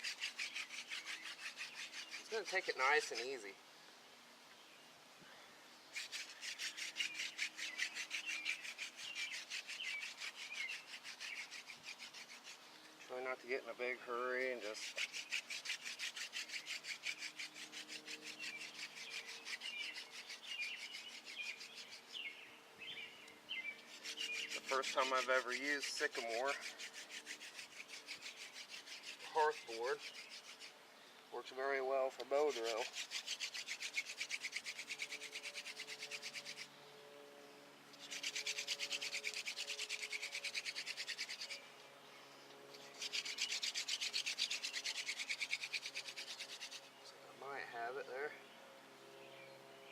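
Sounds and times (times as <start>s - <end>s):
hand drill rasping on wood: 0.0s - 3.4s, 5.9s - 13.0s, 14.4s - 22.2s, 23.8s - 30.8s, 32.1s - 36.7s, 37.9s - 41.6s, 42.8s - 46.9s
wooden spindle rubbing on board: 0.0s - 3.4s, 6.0s - 12.6s, 14.6s - 22.0s, 23.9s - 30.7s, 32.2s - 36.7s, 38.0s - 41.6s
birds chirping: 0.0s - 49.9s.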